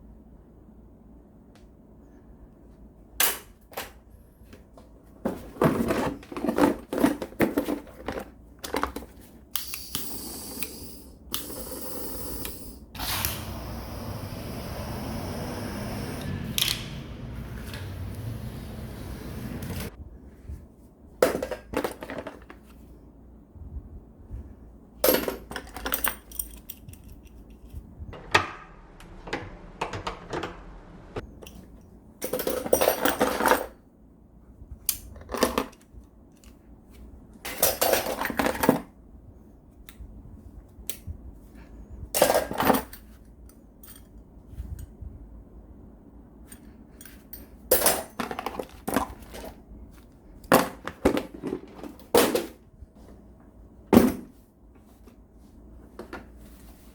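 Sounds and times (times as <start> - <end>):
hand tools clinking and clattering: 25.0 - 27.8.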